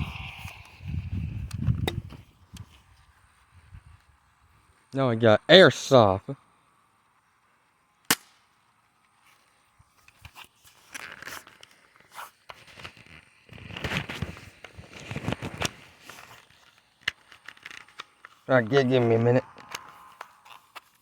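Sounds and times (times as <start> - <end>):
airsoft gun firing: 8.1 - 8.4.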